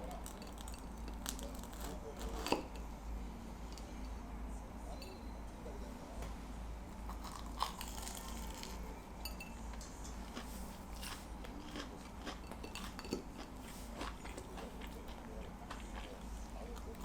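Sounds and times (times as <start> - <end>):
person biting and chewing: 7.1 - 8.8.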